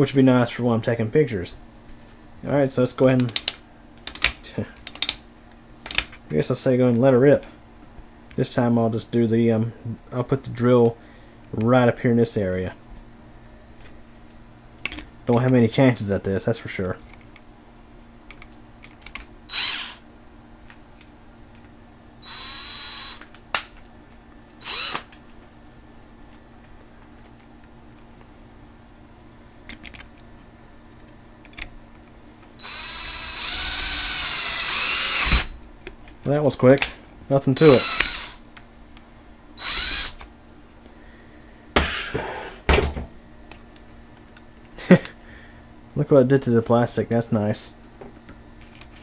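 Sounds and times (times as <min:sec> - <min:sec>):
electric drill boring into plastic: 0:19.5 - 0:20.0, 0:22.2 - 0:23.2, 0:24.6 - 0:25.1, 0:32.6 - 0:35.5, 0:37.6 - 0:38.4, 0:39.6 - 0:40.2.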